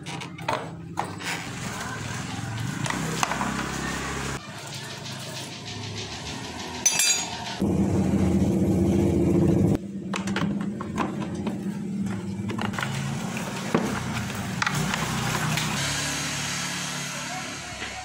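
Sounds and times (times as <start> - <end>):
metallic clinking of tools: 6.8 - 7.6.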